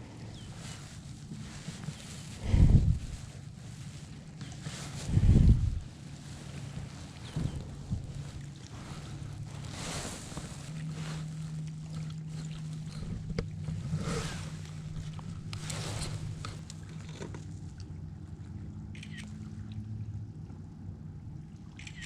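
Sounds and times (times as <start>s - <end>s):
swishes on a kayak: 0.0s - 17.0s
steady low hum: 0.0s - 22.0s.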